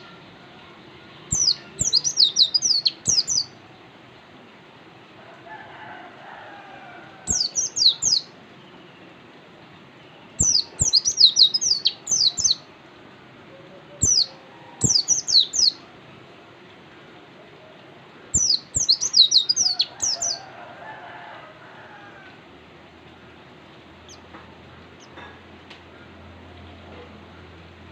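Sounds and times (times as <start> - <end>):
songbird singing: 1.1 - 4.3, 7.2 - 12.7, 13.4 - 15.9, 18.3 - 20.6, 23.0 - 25.4.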